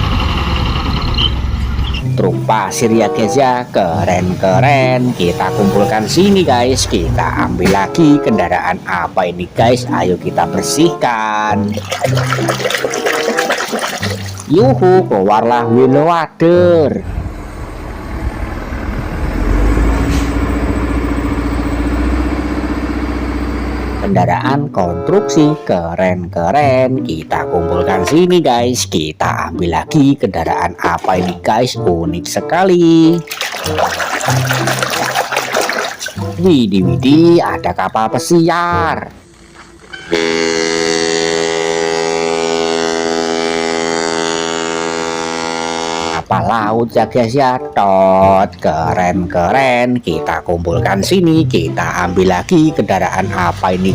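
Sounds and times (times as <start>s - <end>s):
heavy machine engine running: 0.0s - 2.1s, 17.0s - 24.2s
ship's horn blast: 2.7s - 3.8s, 4.4s - 8.8s, 10.2s - 11.6s, 24.8s - 25.8s, 39.1s - 46.3s.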